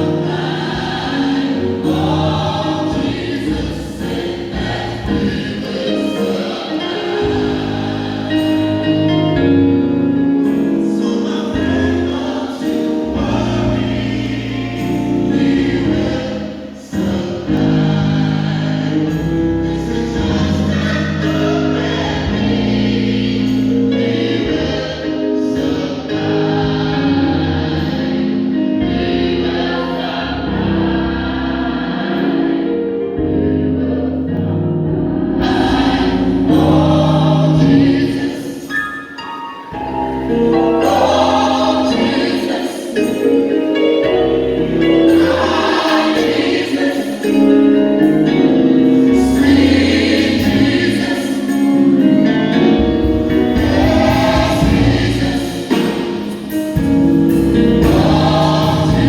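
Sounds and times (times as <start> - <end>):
choir singing: 0.0 - 59.0
live band playing: 51.5 - 59.0.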